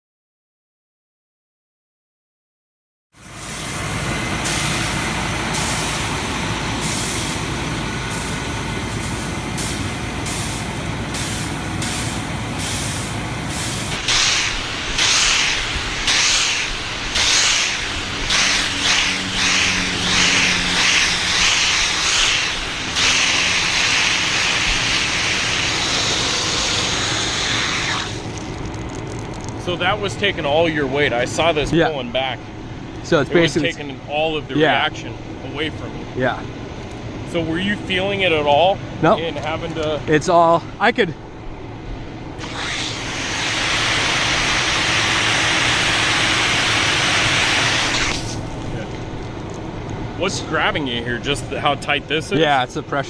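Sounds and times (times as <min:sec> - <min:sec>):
fire hose water jet hissing: 0:03.2 - 0:28.4, 0:42.4 - 0:48.5.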